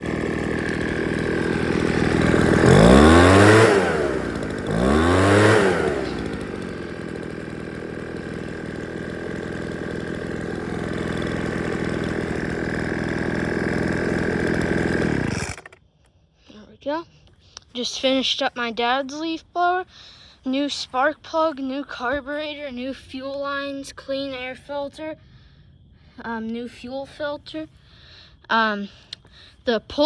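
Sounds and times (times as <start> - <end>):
leaf blower engine revving: 0.0 - 15.8.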